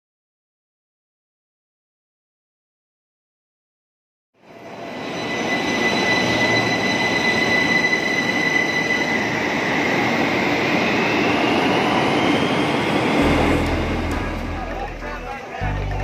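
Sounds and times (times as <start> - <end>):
whine rising in pitch: 4.4 - 15.3
train rolling rumble: 4.5 - 16.0
high steady whine: 13.1 - 16.0.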